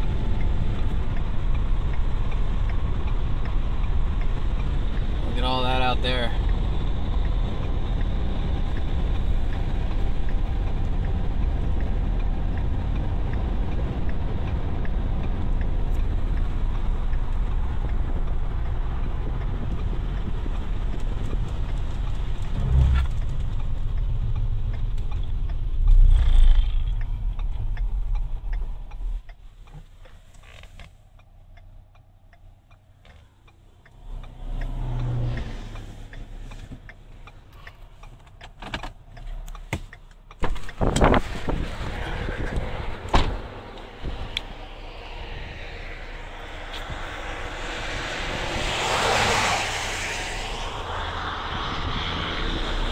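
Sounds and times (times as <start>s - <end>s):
car engine and road rumble: 0.0s - 52.9s
heavy low thumps: 22.4s - 23.4s.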